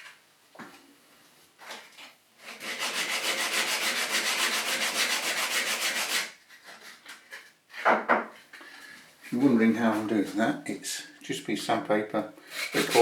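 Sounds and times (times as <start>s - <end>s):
sandpaper rubbing back and forth: 2.4s - 6.4s, 12.5s - 13.0s.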